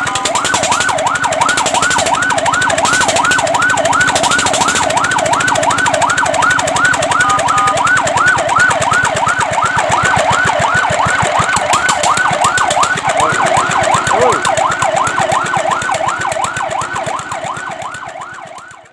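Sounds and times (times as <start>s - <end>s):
fire truck siren yelping: 0.0s - 18.9s
short steady siren tone: 11.5s - 15.8s.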